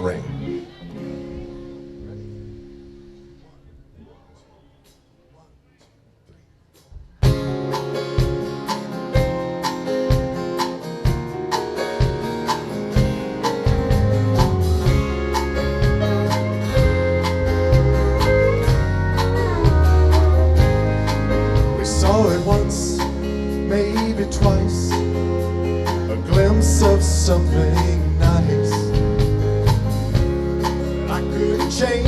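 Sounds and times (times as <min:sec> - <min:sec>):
country band playing: 0:00.0 - 0:03.7, 0:07.2 - 0:32.0
steady drum beat: 0:06.7 - 0:32.0
heavy bass line: 0:13.1 - 0:32.0.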